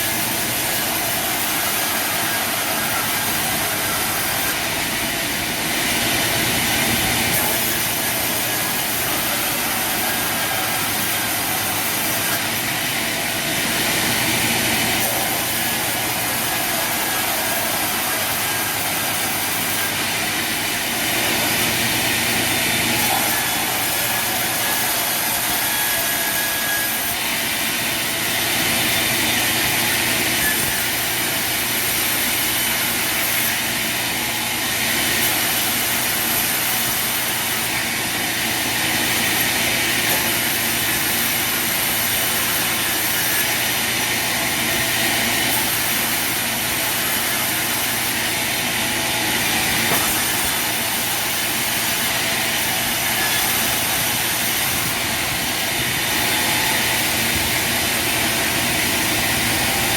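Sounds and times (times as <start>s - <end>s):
sawmill machinery whirring: 0.0s - 59.9s.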